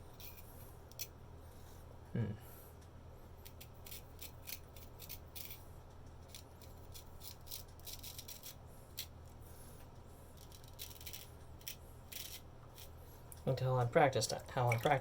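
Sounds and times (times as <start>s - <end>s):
faint low hum: 0.0s - 15.0s
razor scraping stubble: 3.4s - 9.4s.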